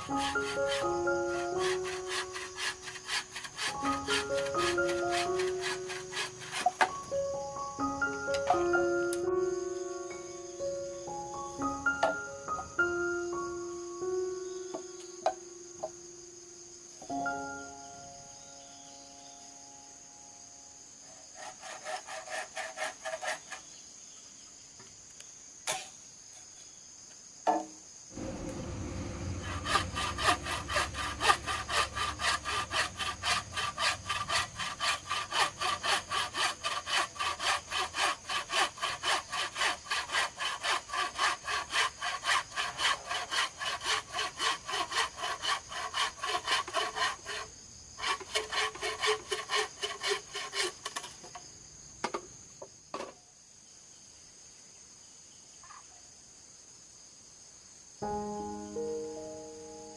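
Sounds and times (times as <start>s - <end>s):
hand saw cutting: 0.0s - 6.9s, 21.1s - 23.7s, 28.2s - 51.2s.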